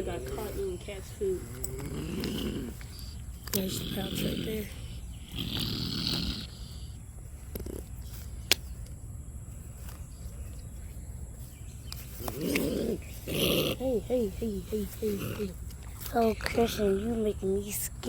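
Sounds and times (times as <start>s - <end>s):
opossum hissing: 0.0s - 8.2s, 12.0s - 17.6s.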